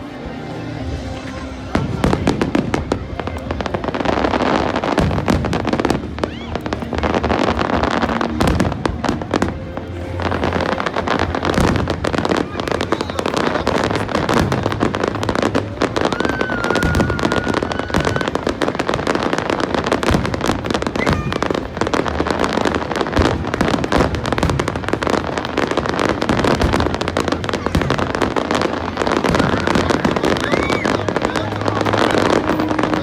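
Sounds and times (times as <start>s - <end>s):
fireworks crackling and banging: 0.0s - 33.0s
firework whistle: 15.9s - 19.6s.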